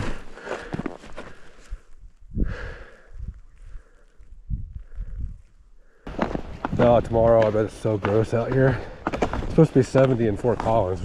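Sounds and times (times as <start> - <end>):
footsteps on deep snow: 0.0 - 1.9, 6.1 - 11.0.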